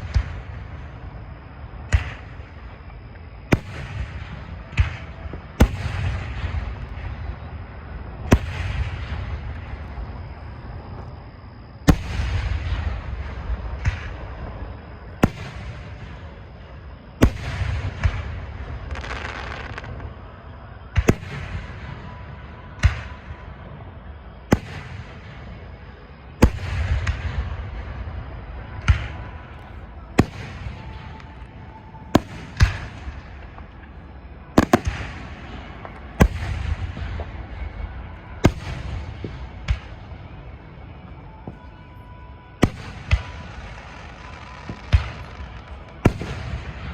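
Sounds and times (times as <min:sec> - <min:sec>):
fireworks crackling: 0:00.0 - 0:23.5, 0:24.5 - 0:41.8, 0:42.6 - 0:46.9
fireworks bangs: 0:00.0 - 0:23.8, 0:24.4 - 0:46.9
low rumbling echo: 0:24.9 - 0:43.7.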